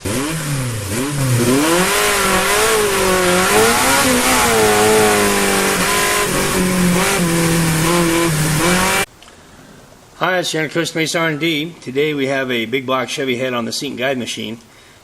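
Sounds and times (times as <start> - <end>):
car engine revving: 0.0 - 9.1.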